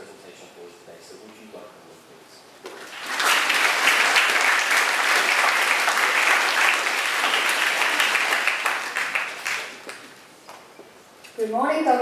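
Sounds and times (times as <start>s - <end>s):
audience applauding: 2.7s - 10.1s.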